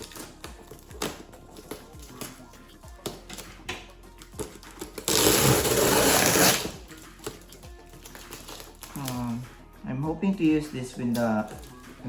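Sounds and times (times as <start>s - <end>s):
cardboard rasping: 4.2s - 9.1s.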